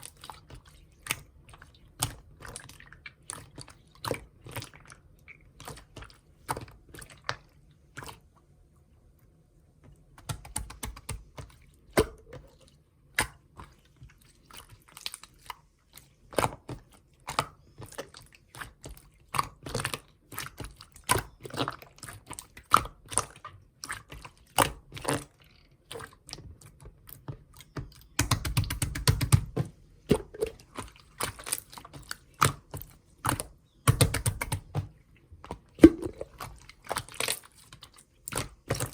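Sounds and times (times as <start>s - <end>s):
slime squished by hand: 26.0s - 38.9s.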